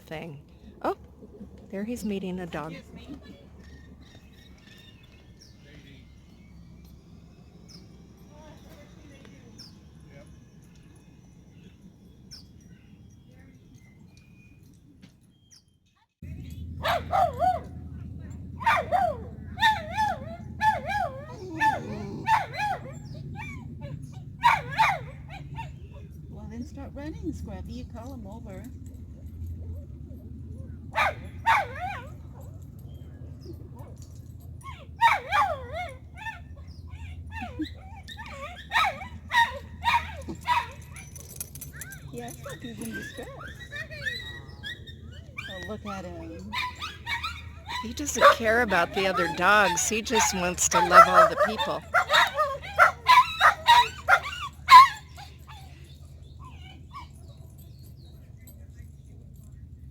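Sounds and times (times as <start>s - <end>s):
low steady rumble: 16.2s - 41.1s
dog whining and yelping: 18.6s - 26.1s, 34.6s - 48.3s, 50.9s - 57.4s.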